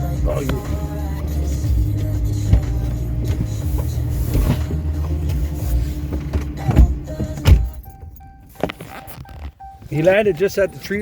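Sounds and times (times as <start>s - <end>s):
truck engine rumble: 0.0s - 11.0s.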